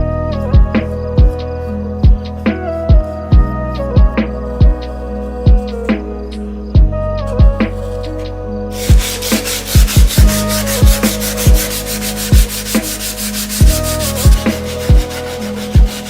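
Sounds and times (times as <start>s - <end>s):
background music with drum beat: 0.0s - 4.9s, 5.5s - 16.0s
sanding strokes: 8.7s - 16.0s.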